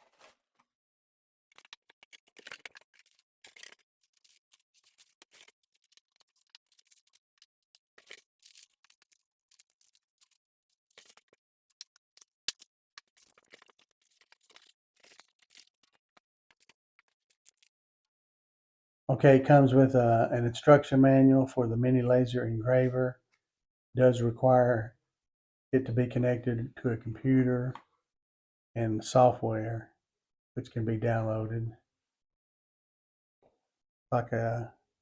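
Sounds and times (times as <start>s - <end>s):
packaging rustling and crinkling: 1.5s - 17.7s.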